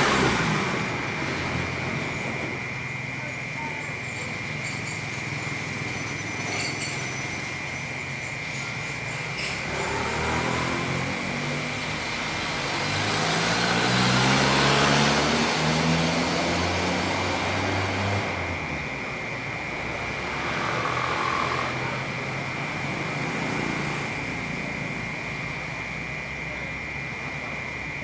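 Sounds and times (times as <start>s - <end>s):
motor vehicle passing: 0.0s - 2.6s, 9.2s - 18.6s, 19.7s - 25.7s
cicadas droning: 0.0s - 28.0s.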